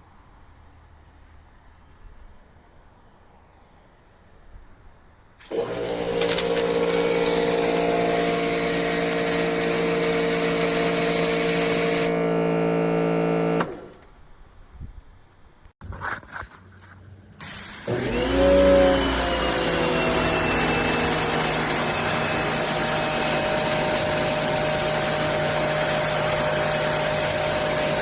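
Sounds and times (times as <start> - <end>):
water jet hissing: 5.4 - 13.9, 17.4 - 28.0
pressure washer motor humming: 5.4 - 14.0, 17.4 - 28.0.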